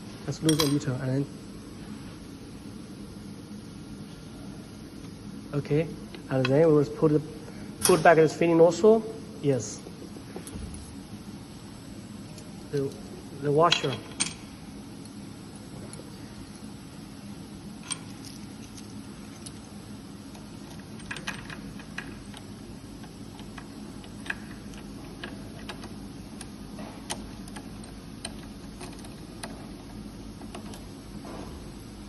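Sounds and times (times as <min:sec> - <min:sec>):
steady low hum: 0:00.0 - 0:32.0
metal machine parts clicking: 0:20.3 - 0:22.4.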